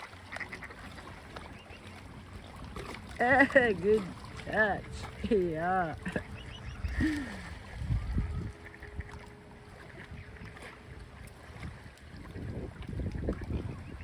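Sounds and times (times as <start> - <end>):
gusty wind buffeting microphone: 4.5 - 14.0.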